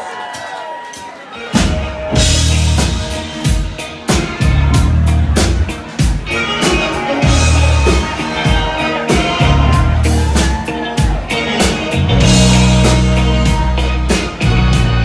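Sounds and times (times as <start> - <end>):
live rock band: 0.2 - 15.0
drum kit hits: 1.6 - 15.0
heavy bass line: 1.6 - 15.0.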